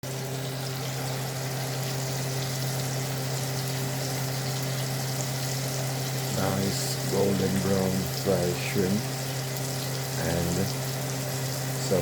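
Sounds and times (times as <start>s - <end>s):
hot oil sizzling: 0.0s - 12.0s
low electrical hum: 0.1s - 12.0s.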